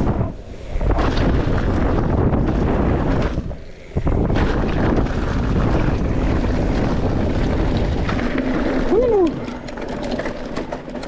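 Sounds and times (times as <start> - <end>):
rumbling tire noise: 0.0 - 11.0
wind buffeting microphone: 0.0 - 11.0.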